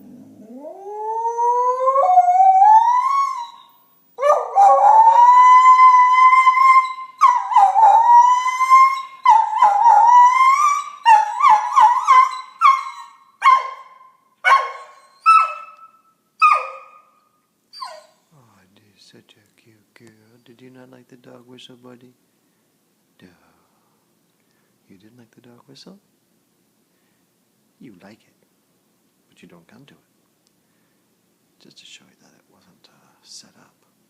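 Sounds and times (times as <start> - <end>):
dog howling: 0.1 - 17.1.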